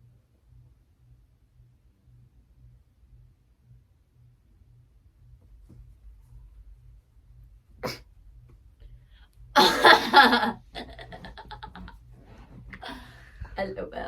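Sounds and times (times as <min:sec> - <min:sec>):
faint low hum: 0:00.0 - 0:14.0
stuttering vocal sounds: 0:07.8 - 0:08.0.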